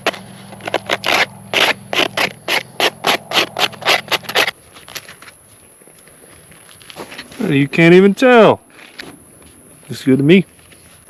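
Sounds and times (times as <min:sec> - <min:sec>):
rhythmic scraping of crust: 0:00.0 - 0:05.2, 0:06.8 - 0:07.9.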